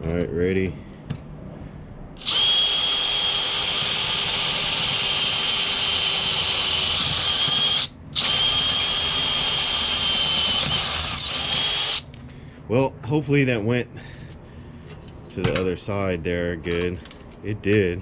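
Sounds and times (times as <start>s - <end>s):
power drill whining: 2.2s - 12.1s.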